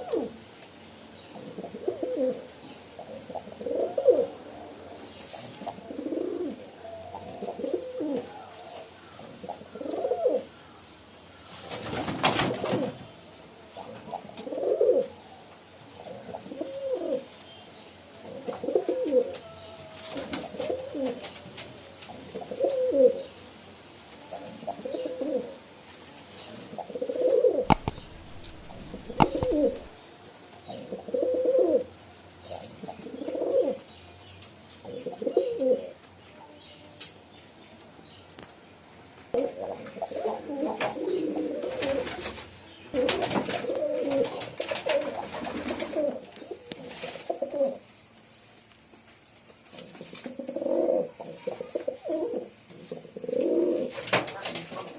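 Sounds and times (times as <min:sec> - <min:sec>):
pigeons cooing: 0:00.0 - 0:00.3, 0:01.4 - 0:04.5, 0:05.3 - 0:10.5, 0:13.8 - 0:15.2, 0:16.0 - 0:17.3, 0:18.2 - 0:19.4, 0:20.1 - 0:21.3, 0:22.1 - 0:23.3, 0:24.6 - 0:25.6, 0:26.7 - 0:30.0, 0:30.7 - 0:31.9, 0:32.5 - 0:33.8, 0:34.8 - 0:36.0, 0:39.4 - 0:47.8, 0:50.2 - 0:54.0
sharp clicks: 0:27.7 - 0:30.0.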